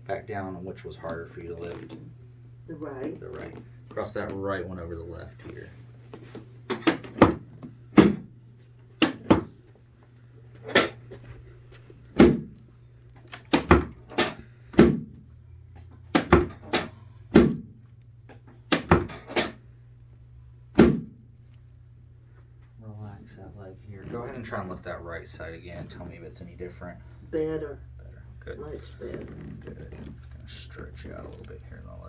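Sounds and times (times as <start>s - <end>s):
steady low hum: 0.0s - 32.0s
sharp knocks: 8.0s - 8.3s, 9.0s - 9.6s, 12.2s - 12.6s, 13.5s - 15.2s, 16.1s - 17.8s, 18.7s - 19.6s, 20.8s - 21.2s.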